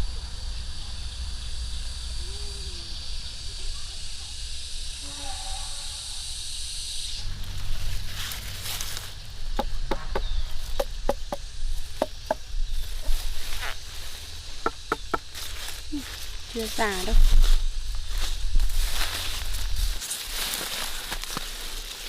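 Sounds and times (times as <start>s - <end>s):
low rumble: 0.0s - 4.9s, 7.2s - 16.5s
high-pitched insect buzz: 0.0s - 22.0s
sharp knocks: 9.5s - 12.4s, 14.6s - 15.4s.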